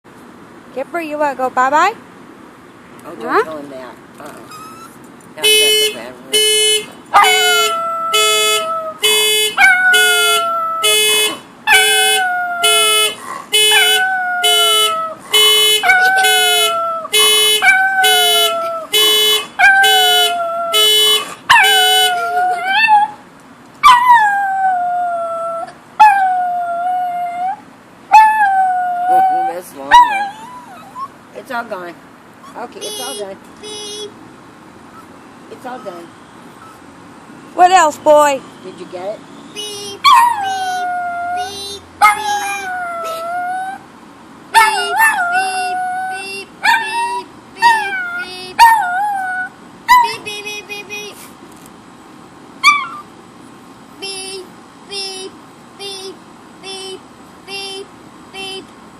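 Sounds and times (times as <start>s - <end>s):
car alarm pulsing tone: 5.4s - 22.3s
dog howling: 23.8s - 31.1s, 40.0s - 43.8s, 44.6s - 50.1s.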